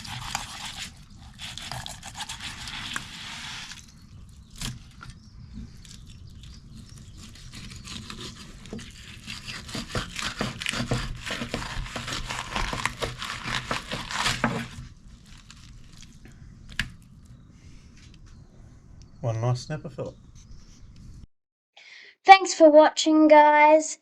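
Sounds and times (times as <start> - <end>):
crinkling rustling handling noise: 12.3 - 17.1.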